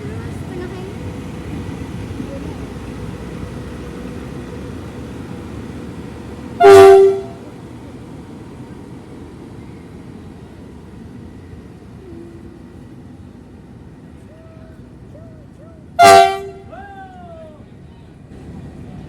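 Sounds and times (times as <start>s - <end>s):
train rumbling: 0.0s - 19.0s
locomotive horn blast: 6.6s - 7.4s, 16.0s - 16.7s.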